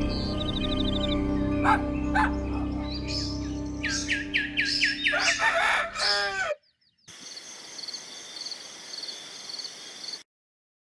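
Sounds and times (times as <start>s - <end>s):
chickens chirping: 0.0s - 10.2s
repeating high chirp: 0.1s - 5.7s
rooster crowing: 4.6s - 6.6s.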